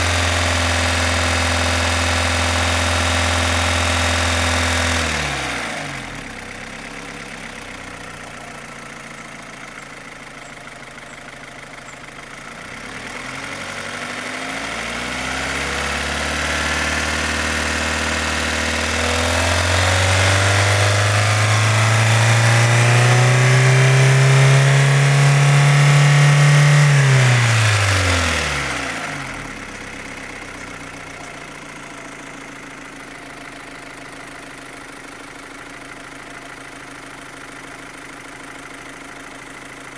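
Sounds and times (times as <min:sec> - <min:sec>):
car engine ticking and revving: 0:00.0 - 0:39.9.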